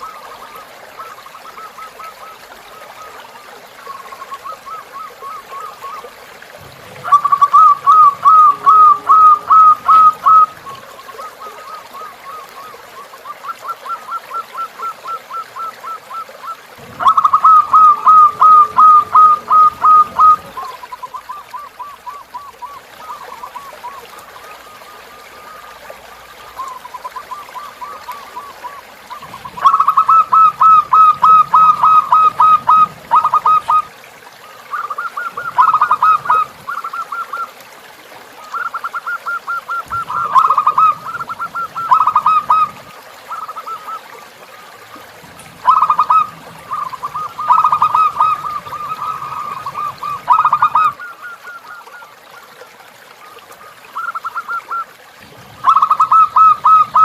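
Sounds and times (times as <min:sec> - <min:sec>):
doves singing repeated notes: 0:00.0 - 0:37.7, 0:38.4 - 0:57.0
faint flowing water: 0:00.0 - 0:57.0.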